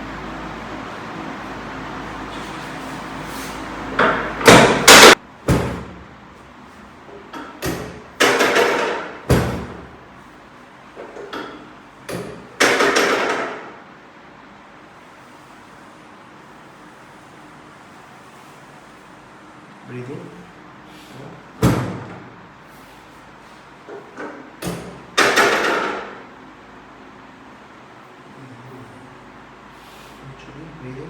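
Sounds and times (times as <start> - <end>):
loud knocks and clattering thuds: 3.9 - 6.1, 7.5 - 10.0, 21.6 - 22.4.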